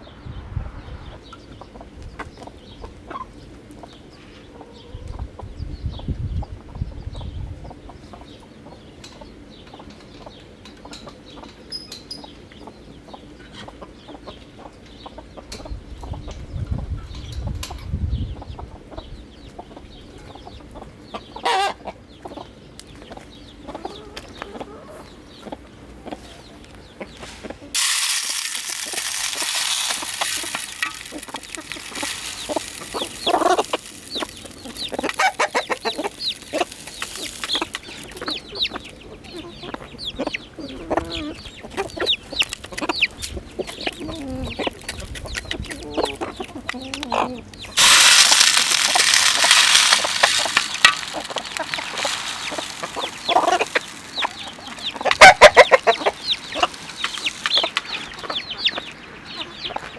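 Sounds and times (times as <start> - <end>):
chickens clucking: 1.0 - 59.9
small ticks: 27.8 - 38.3.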